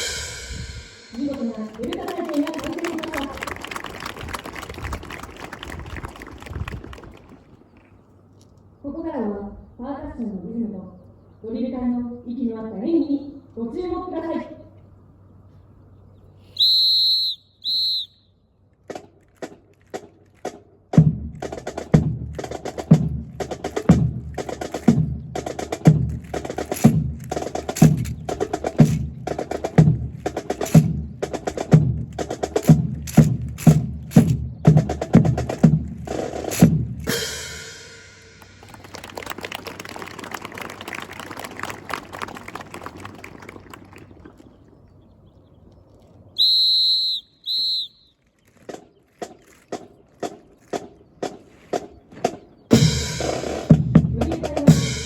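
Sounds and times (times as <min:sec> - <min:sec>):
marching drums with bass drum: 0:00.0 - 0:02.2, 0:18.9 - 0:38.6, 0:48.7 - 0:55.0
shrill whistle blasts: 0:16.5 - 0:18.4, 0:46.4 - 0:48.2.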